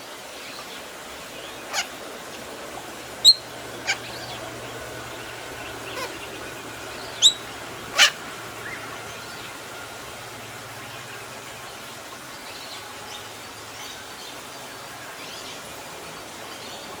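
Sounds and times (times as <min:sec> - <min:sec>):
low steady hum: 0:00.5 - 0:16.9
parrot calling: 0:01.2 - 0:10.0.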